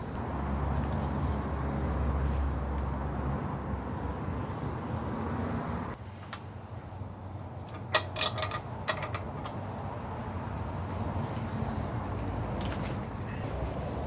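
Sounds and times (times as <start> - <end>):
metal parts clinking: 7.7 - 9.6.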